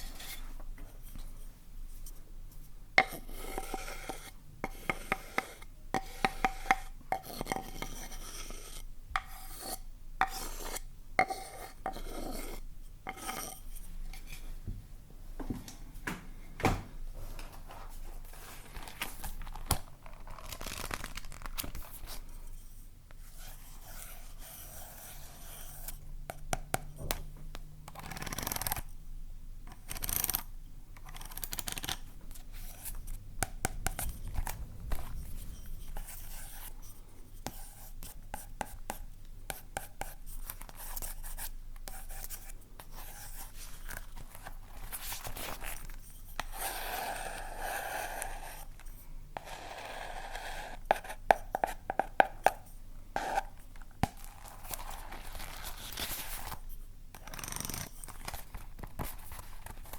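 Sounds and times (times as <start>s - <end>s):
objects scratching and scraping: 17.2s - 26.0s, 31.1s - 37.1s.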